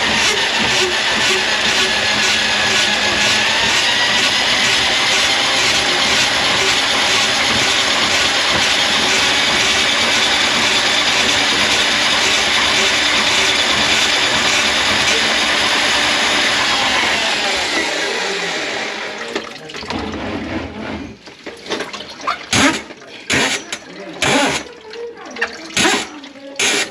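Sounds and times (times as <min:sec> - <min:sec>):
electric motor running: 0:00.0 - 0:19.3.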